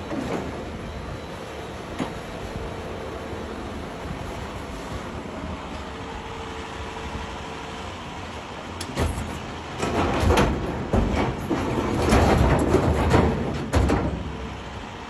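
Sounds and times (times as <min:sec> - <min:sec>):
excavator rumble: 0:00.0 - 0:15.0
loud irregular metal clanks: 0:08.9 - 0:14.4.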